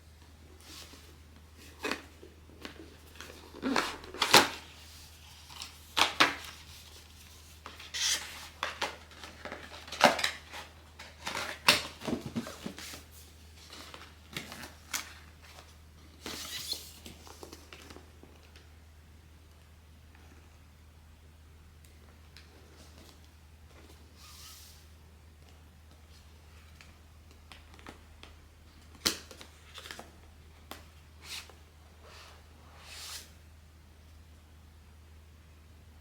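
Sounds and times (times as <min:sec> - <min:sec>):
packaging crinkling and tearing: 0:05.3 - 0:12.1.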